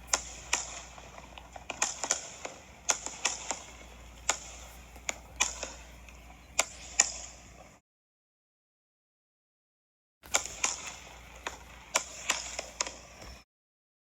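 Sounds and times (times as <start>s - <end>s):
firework cracks: 0.0s - 7.3s, 10.3s - 13.2s.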